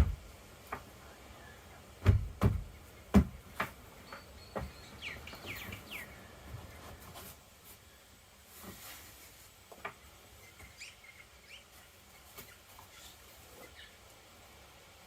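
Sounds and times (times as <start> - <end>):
knocks on van panels: 0.0 - 0.8, 2.0 - 3.8
bird chirping: 3.9 - 7.0, 10.3 - 14.0.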